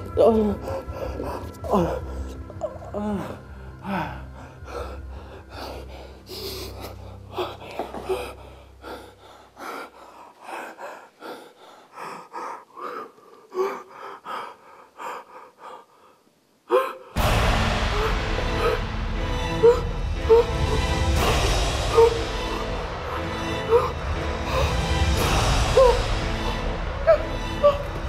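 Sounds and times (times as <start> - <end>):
person gasping and panting: 0.4 - 17.2, 17.9 - 28.0
low drone: 17.2 - 28.0.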